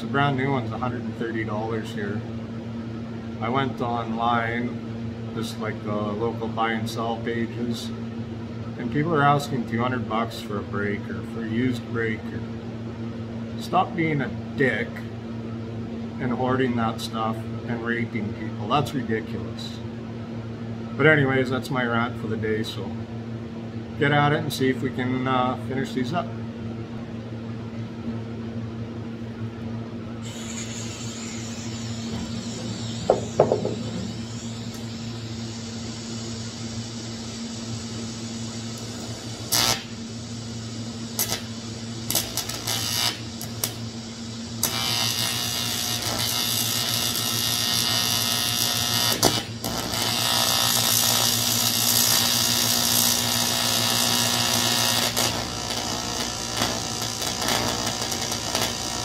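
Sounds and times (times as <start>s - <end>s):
transformer hum: 28.9s - 59.0s
buzzing welding arc: 30.2s - 59.0s.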